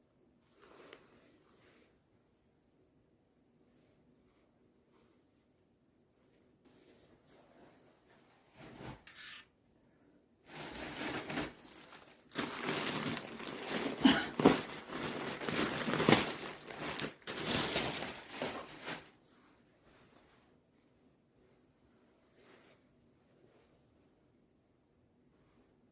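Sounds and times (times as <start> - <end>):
packaging crinkling and tearing: 10.5 - 19.1.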